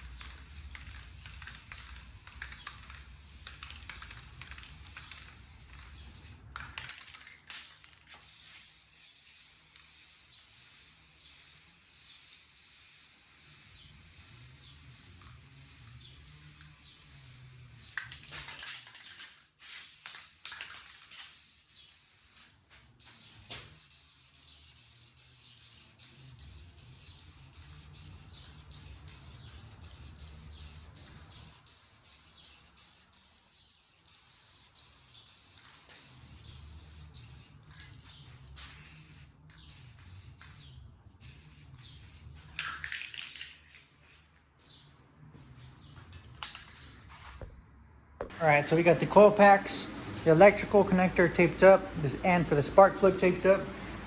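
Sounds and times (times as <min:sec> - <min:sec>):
aerosol spray can hissing: 0:00.0 - 0:06.4, 0:08.1 - 0:18.2, 0:19.6 - 0:42.5.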